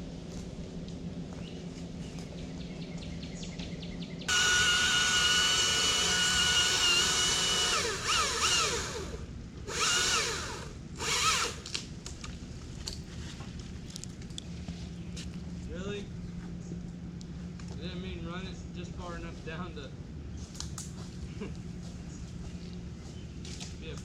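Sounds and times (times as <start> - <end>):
battery chainsaw whining: 4.3 - 11.7.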